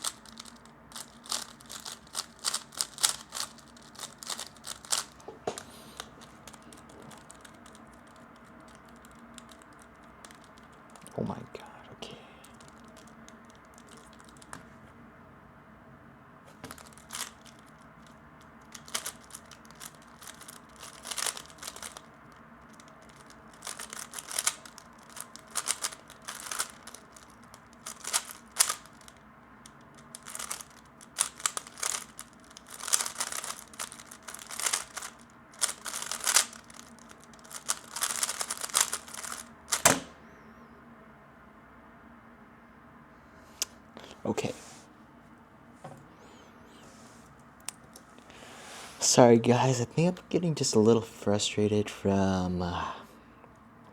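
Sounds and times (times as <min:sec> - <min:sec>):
puzzle cube clicking: 0:00.0 - 0:11.1, 0:12.4 - 0:14.6, 0:16.7 - 0:22.1, 0:22.7 - 0:40.2.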